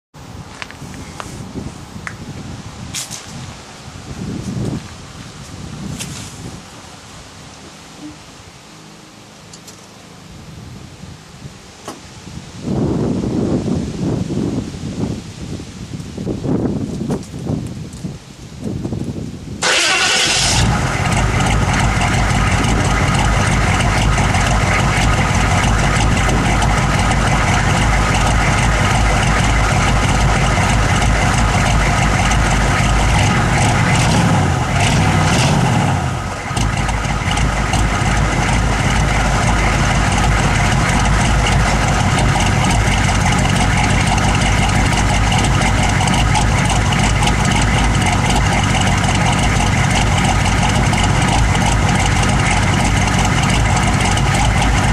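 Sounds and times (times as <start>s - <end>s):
engine idling roughly: 19.6s - 54.9s.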